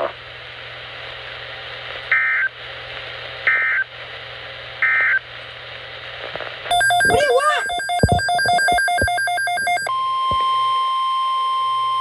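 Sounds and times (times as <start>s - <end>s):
radio hiss: 5.3s - 9.1s
buzzy digital data tones: 6.7s - 9.9s.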